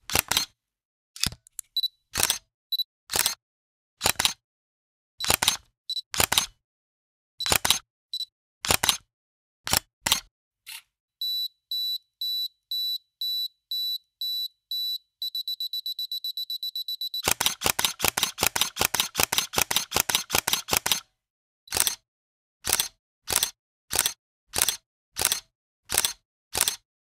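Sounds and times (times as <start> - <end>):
camera shutter clicks: 5.2 - 5.6, 17.2 - 21.0, 22.6 - 26.8
camera self-timer beeping: 11.2 - 21.0.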